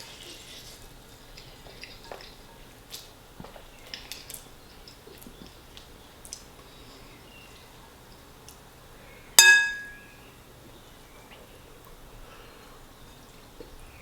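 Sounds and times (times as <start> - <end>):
wet chewing: 1.3 - 6.5.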